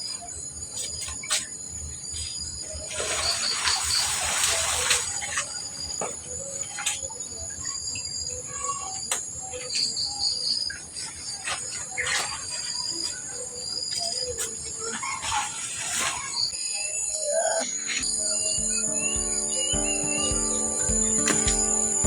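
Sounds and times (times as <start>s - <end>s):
high-pitched insect chirring: 16.8s - 22.0s.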